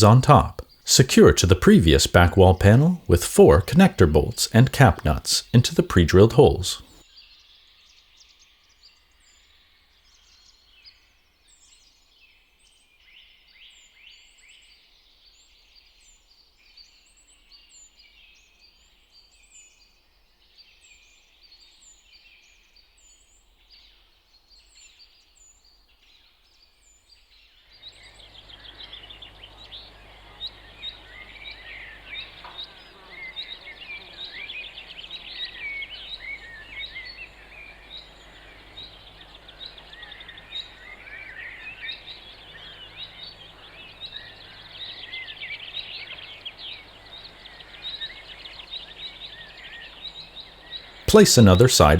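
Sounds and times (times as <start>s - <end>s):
background noise: 0.0s - 11.9s, 23.0s - 51.9s.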